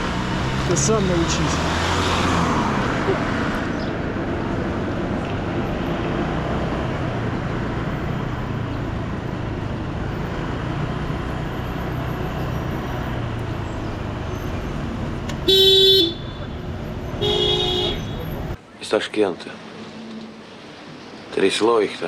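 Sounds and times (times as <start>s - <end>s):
road traffic noise: 0.0s - 22.0s
vehicle horn blast: 15.4s - 18.5s.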